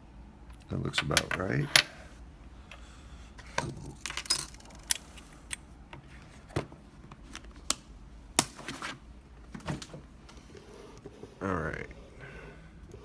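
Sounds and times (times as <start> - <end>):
small metal parts clinking: 3.6 - 5.0.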